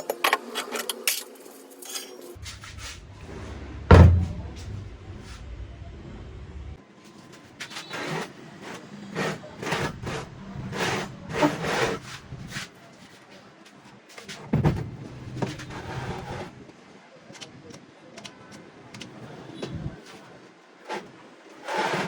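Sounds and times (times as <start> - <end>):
scraping and rubbing strokes: 1.4 - 3.7
knock: 3.9 - 4.7.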